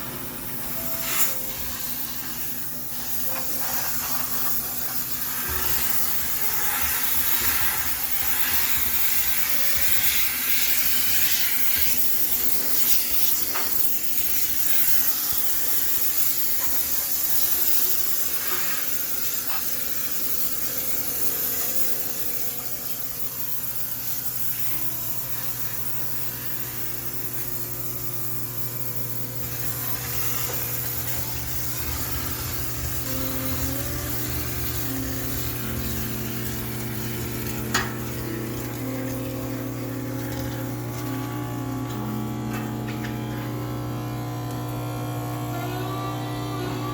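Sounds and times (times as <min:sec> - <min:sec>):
steam cleaner hissing: 0:00.0 - 0:46.9
low steady hum: 0:29.4 - 0:46.9.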